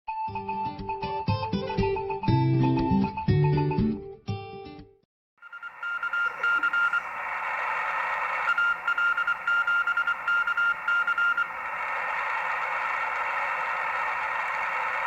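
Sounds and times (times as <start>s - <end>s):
morse code beeping: 5.4s - 15.0s
radio band hiss: 5.4s - 15.0s.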